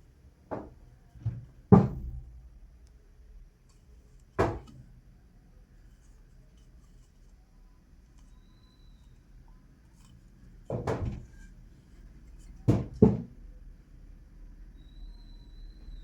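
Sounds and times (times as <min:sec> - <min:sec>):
hard objects knocking: 0:12.6 - 0:13.4.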